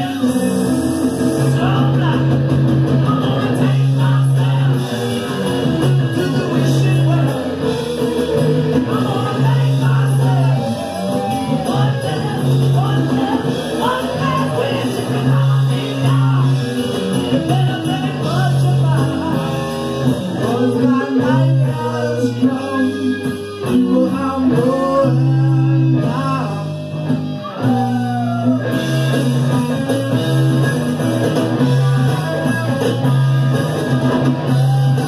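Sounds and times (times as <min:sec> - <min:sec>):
person singing: 0:00.0 - 0:07.8, 0:08.8 - 0:26.8
live blues-rock band playing: 0:00.0 - 0:35.0.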